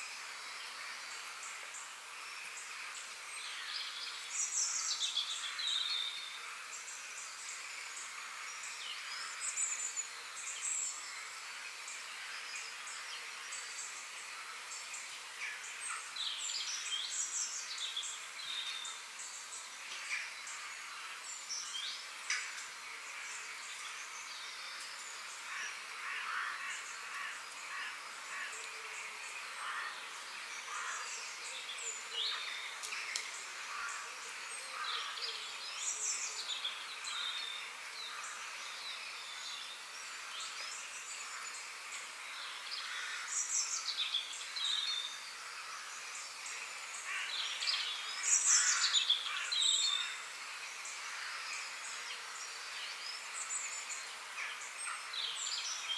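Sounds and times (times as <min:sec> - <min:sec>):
steady high hiss: 0:00.0 - 0:55.9
birds chirping and calling: 0:46.4 - 0:50.2.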